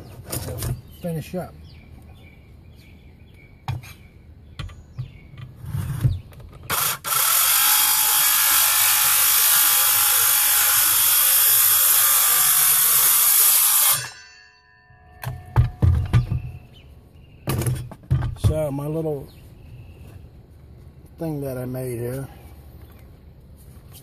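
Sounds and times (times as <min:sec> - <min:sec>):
cordless saw cutting: 0:06.7 - 0:14.2.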